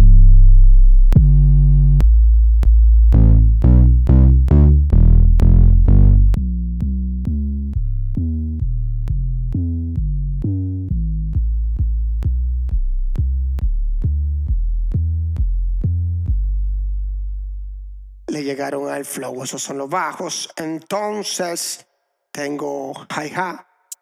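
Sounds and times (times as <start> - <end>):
short pitched bass notes: 0.0 - 18.3.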